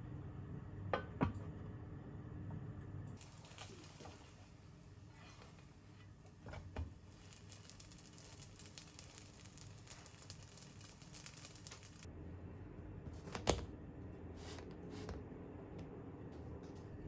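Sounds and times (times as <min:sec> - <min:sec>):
crinkling crackles: 0:07.0 - 0:12.1.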